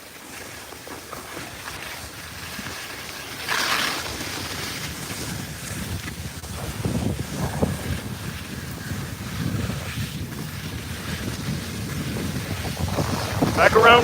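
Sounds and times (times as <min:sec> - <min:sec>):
skis hissing over snow: 0:00.0 - 0:14.0
wind rushing over microphone: 0:05.2 - 0:14.0.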